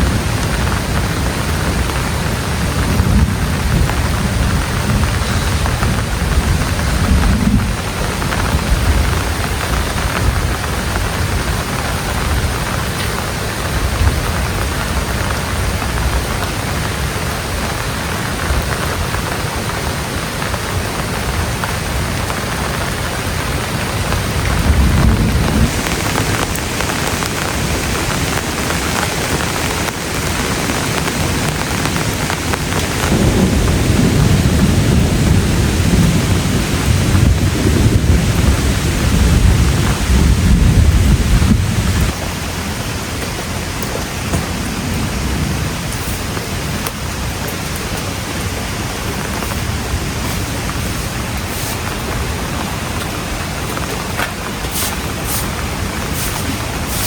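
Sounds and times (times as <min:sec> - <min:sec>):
low rumbling: 0:00.0 - 0:14.7
heavy rain falling: 0:00.0 - 0:57.0.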